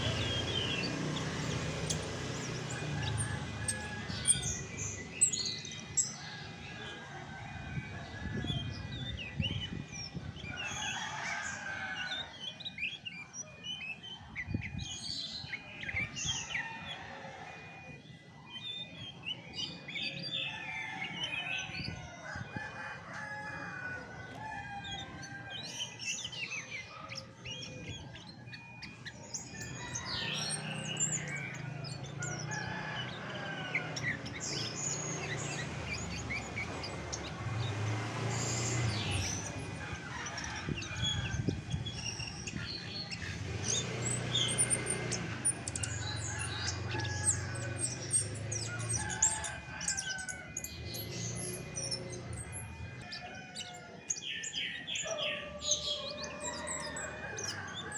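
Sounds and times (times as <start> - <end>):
thrush singing: 0.0 - 7.4, 19.3 - 57.9.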